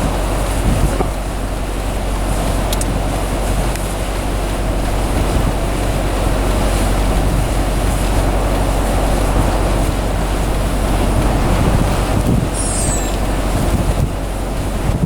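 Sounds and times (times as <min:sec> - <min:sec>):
blizzard wind buffeting microphone: 0:00.0 - 0:15.0.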